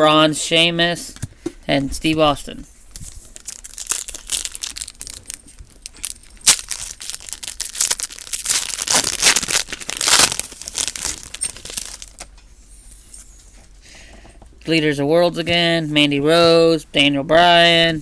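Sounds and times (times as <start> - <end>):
wrapper tearing and crinkling: 2.9 - 12.3.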